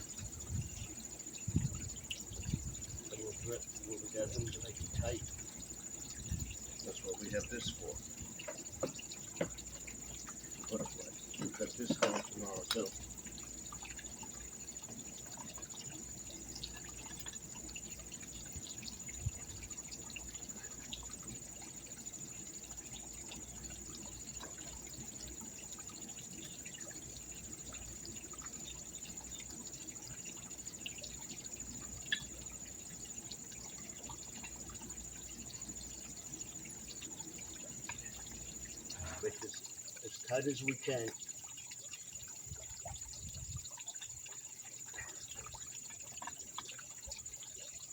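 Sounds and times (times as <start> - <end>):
small ticks: 0.0 - 47.9
water trickling and pouring: 0.0 - 47.9.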